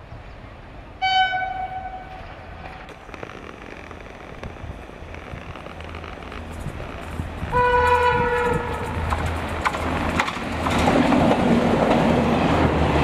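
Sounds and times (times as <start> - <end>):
train rumble: 0.0 - 13.0
locomotive horn: 1.0 - 2.7, 7.5 - 9.1
wheels clicking on rails: 2.1 - 13.0.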